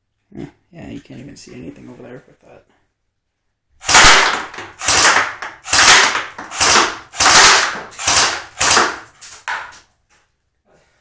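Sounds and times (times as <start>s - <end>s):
airsoft gun firing bursts: 3.8s - 9.7s.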